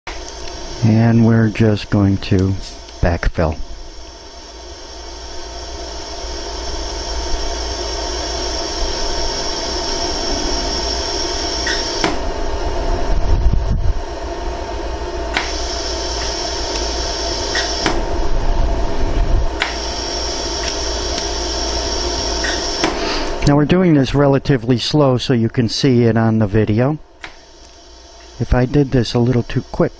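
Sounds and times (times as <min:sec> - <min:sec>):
laser welding machine humming: 0:00.1 - 0:13.2, 0:13.9 - 0:23.8, 0:26.7 - 0:29.9
sharp laser clicks: 0:11.6 - 0:12.2, 0:15.4 - 0:16.9, 0:17.5 - 0:18.1, 0:19.6 - 0:21.4, 0:22.4 - 0:22.9.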